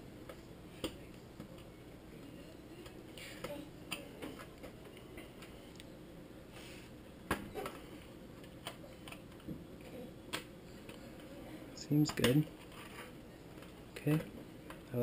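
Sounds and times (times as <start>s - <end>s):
plastic parts clicking and tapping: 12.1s - 12.5s.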